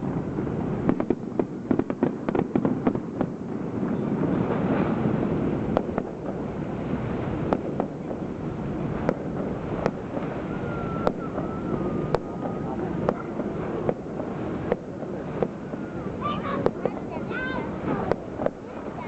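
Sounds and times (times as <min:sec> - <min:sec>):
fireworks shells bursting: 0:00.7 - 0:19.0
thin whistling tone: 0:10.4 - 0:12.8.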